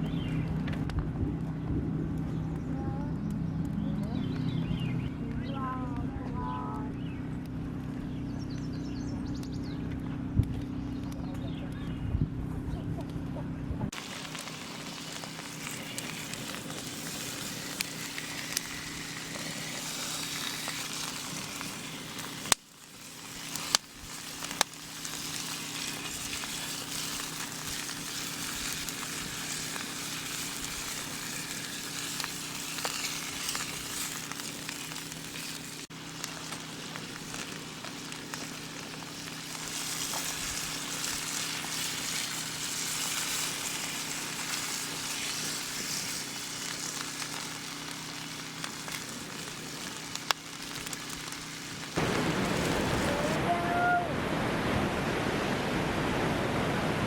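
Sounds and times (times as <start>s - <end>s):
steak sizzling in a hot pan: 14.0s - 53.4s.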